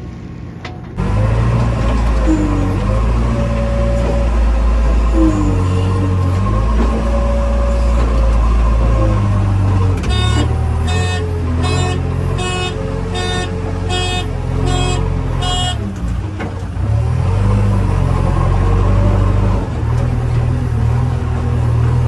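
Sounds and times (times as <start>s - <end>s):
diesel engine rumbling: 0.0s - 22.0s
reversing alarm beeping: 1.2s - 15.9s.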